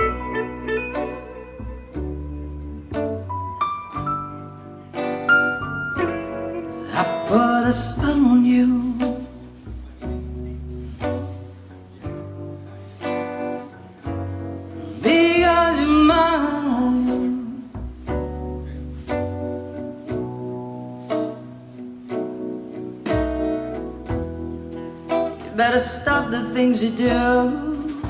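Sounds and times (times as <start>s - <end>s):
double bass line: 0.0s - 28.0s
plucked guitar: 0.0s - 28.0s
person singing: 6.6s - 9.6s, 14.8s - 18.0s, 25.2s - 28.0s.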